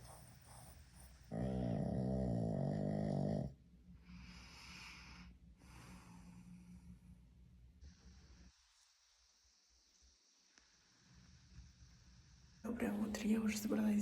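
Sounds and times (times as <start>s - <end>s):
dog breathing softly: 0.0s - 1.4s
dog snoring: 0.0s - 3.6s.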